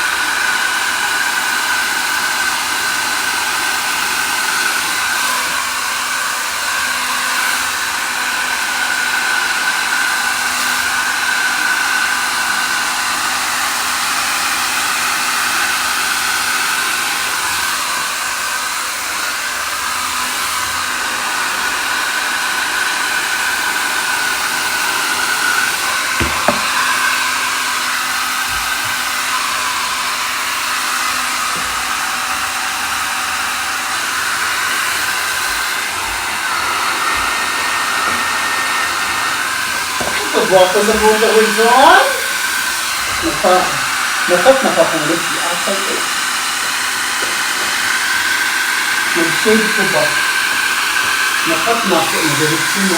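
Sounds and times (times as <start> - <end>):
hair dryer running: 0.0 - 52.9
brief knock: 26.2 - 26.8.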